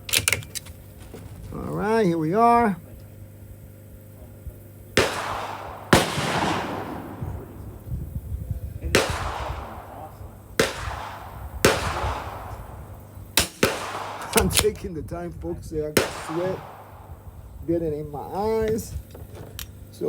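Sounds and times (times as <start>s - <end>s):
gunshots with echo: 5.0s - 8.0s, 8.9s - 14.6s, 16.0s - 17.4s.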